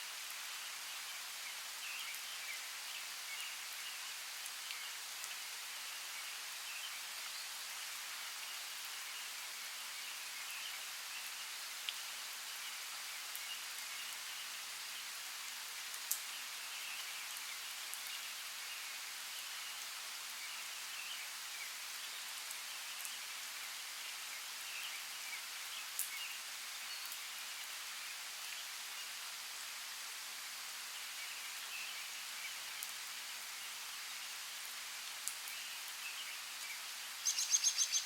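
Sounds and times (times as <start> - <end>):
steady rain: 0.0 - 38.0
raindrops striking close by: 0.2 - 38.0.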